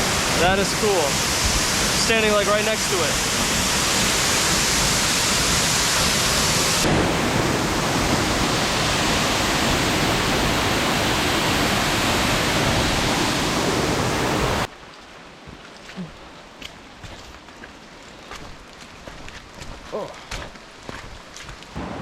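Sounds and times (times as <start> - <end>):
waterfall rushing: 0.0 - 14.7.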